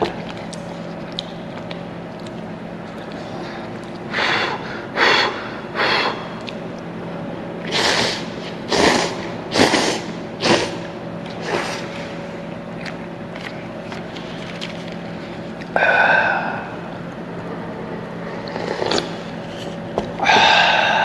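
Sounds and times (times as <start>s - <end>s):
faint hum: 0.0s - 21.0s
person slurping noodles: 7.7s - 10.8s.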